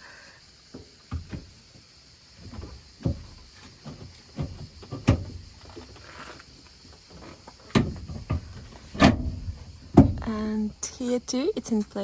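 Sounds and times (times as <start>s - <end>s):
knocks: 7.7s - 10.3s.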